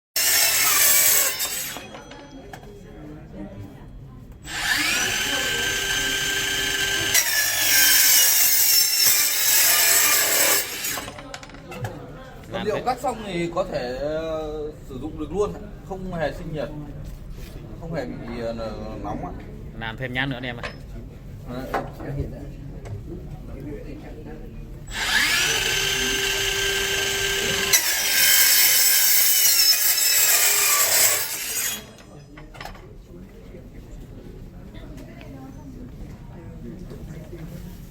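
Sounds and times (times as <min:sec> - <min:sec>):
blade cutting into metal: 0:00.2 - 0:01.9, 0:04.5 - 0:11.1, 0:24.9 - 0:32.1
metal cutter blade whining: 0:00.2 - 0:02.2, 0:04.5 - 0:11.2, 0:24.9 - 0:32.2.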